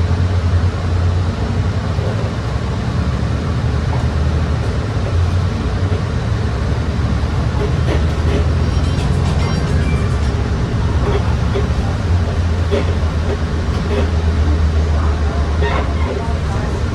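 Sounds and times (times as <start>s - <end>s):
bus engine drone: 0.0s - 16.9s
road noise: 0.0s - 16.9s
faint high squeaks: 7.5s - 14.1s.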